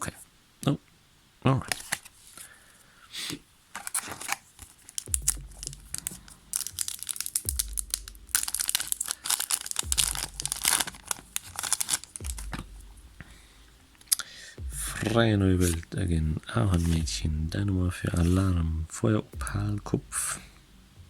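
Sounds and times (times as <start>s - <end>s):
foil wrappers tearing and crinkling: 3.7s - 12.6s
dull bump: 5.1s - 8.7s, 9.8s - 13.8s, 14.6s - 15.9s, 19.4s - 20.5s.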